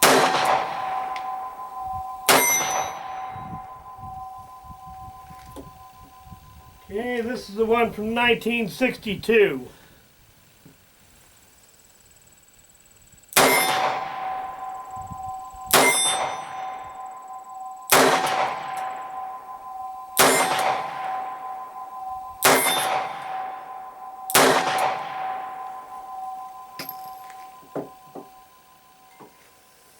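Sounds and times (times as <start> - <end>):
revolver gunshots: 0.0 - 3.3, 13.4 - 14.7, 17.9 - 19.3, 20.2 - 21.4, 22.4 - 23.7, 24.3 - 25.8
distant steel target clanging: 0.0 - 7.8, 13.4 - 29.4
steel plate ringing: 0.0 - 8.3, 13.4 - 29.9.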